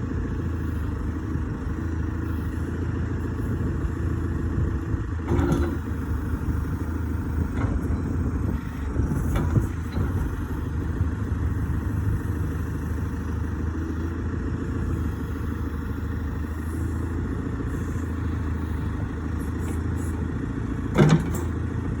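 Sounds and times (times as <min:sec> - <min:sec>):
diesel engine running at low revs: 0:00.0 - 0:22.0
light metal clanks: 0:05.2 - 0:06.0, 0:20.8 - 0:21.7.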